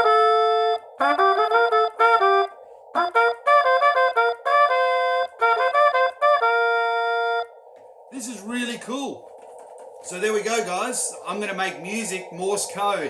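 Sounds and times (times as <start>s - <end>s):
trumpet playing a tune: 0.0s - 7.5s.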